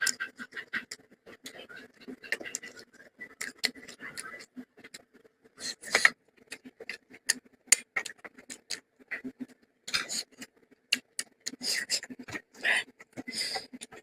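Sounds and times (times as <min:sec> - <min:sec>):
wet chewing and lip-smacking: 0:02.2 - 0:05.1, 0:05.8 - 0:14.0
breathy sounds: 0:11.5 - 0:14.0.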